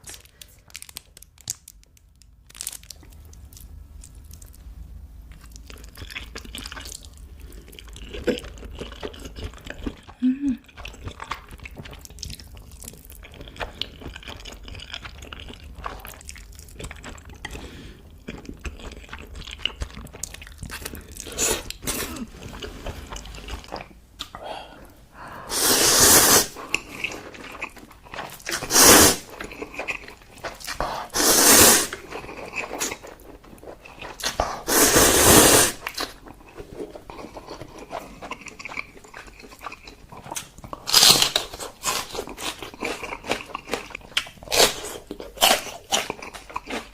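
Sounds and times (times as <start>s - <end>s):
wet chewing: 5.3s - 25.0s, 26.5s - 34.6s, 35.8s - 46.9s
loud bites or slurps: 25.5s - 26.6s, 28.5s - 29.3s, 31.1s - 32.0s, 34.3s - 35.9s.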